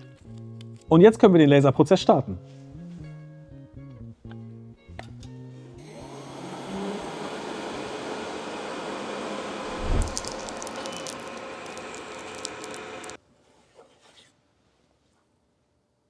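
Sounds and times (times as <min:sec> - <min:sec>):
laser engraver whirring: 0:05.8 - 0:13.2.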